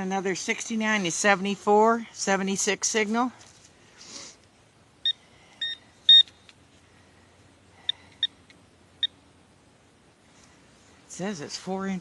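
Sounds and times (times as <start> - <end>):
metal detector beeps: 5.0 - 6.5, 7.9 - 8.4.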